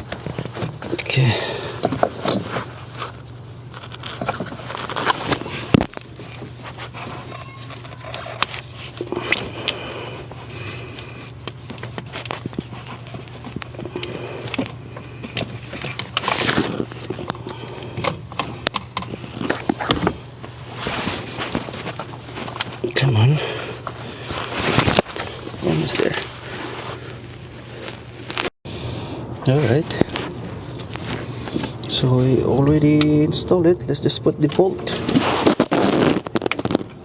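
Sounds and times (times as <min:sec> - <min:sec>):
steady low hum: 0:00.0 - 0:37.0
clicks and knocks of parts handled: 0:10.9 - 0:20.2.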